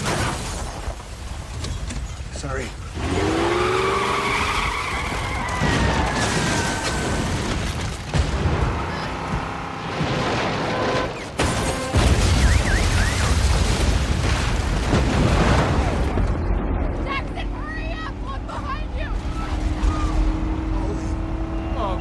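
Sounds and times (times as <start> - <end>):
booms and crashes: 5.0 - 9.0, 9.9 - 17.0
deep earthquake rumble: 12.0 - 18.0.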